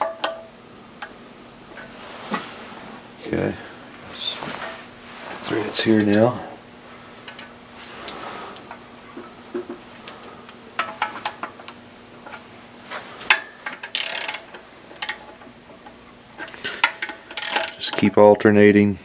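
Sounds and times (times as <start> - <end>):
hand ratchet clicking: 13.3 - 18.1.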